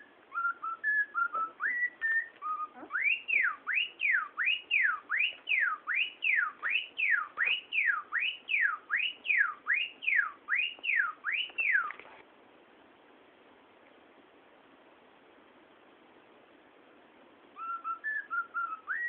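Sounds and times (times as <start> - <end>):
cockatiel whistling a siren: 0.0 - 11.9, 17.6 - 19.0.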